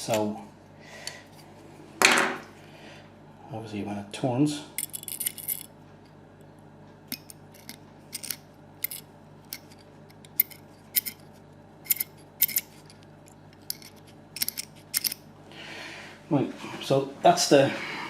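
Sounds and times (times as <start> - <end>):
metallic clicks and scrapes: 7.1 - 15.2.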